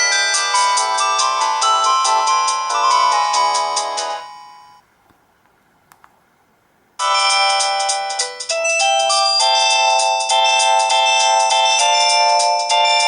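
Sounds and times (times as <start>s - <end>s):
polyphonic phone ringtone melody: 0.0s - 4.8s, 7.0s - 13.0s.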